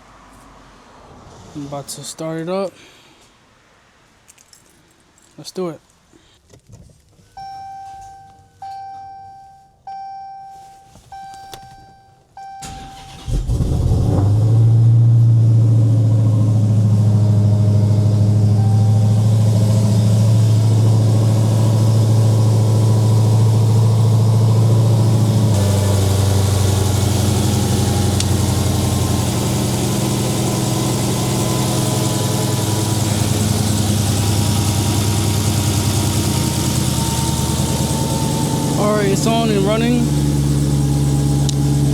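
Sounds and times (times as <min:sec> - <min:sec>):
chime: 0:07.4 - 0:12.2
car engine cranking and idling: 0:11.0 - 0:41.9.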